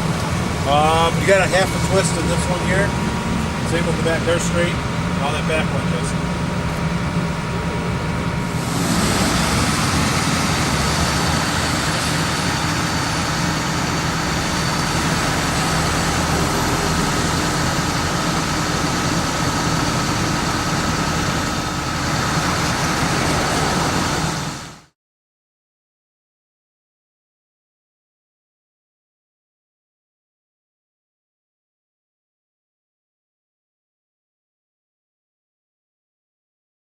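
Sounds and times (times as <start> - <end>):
road traffic: 0.0 - 24.9.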